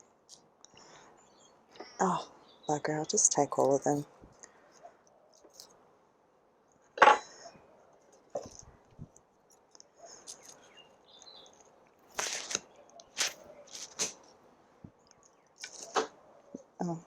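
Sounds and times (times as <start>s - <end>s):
rustling and scraping: 3.6s - 5.8s, 7.9s - 14.4s, 15.6s - 16.2s.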